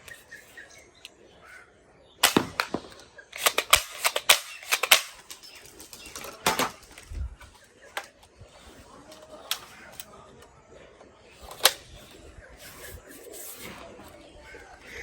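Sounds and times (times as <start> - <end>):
toy guns firing: 2.2 - 7.1, 7.9 - 10.2, 11.4 - 13.7.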